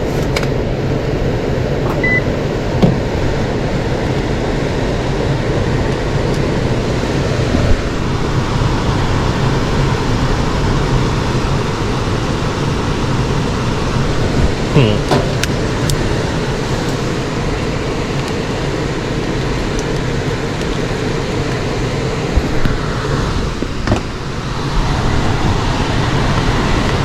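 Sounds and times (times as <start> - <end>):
blower motor running: 0.0 - 27.0
rush of air: 0.0 - 27.0
short beep: 1.8 - 2.3.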